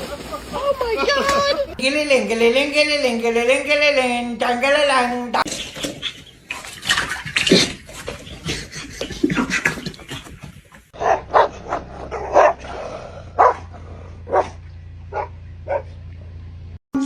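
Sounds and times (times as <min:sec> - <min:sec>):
dog barking: 0:11.0 - 0:12.7, 0:13.4 - 0:16.0.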